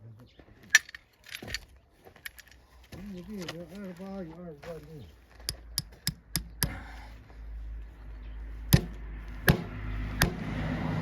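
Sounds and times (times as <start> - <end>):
tools knocking on hoof: 8.7 - 10.5.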